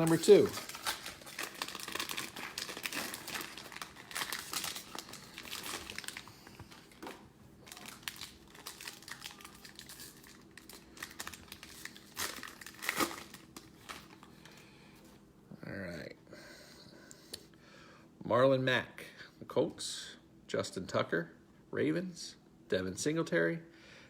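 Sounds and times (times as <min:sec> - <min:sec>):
plastic wrapper crinkling and tearing: 0:00.0 - 0:14.6.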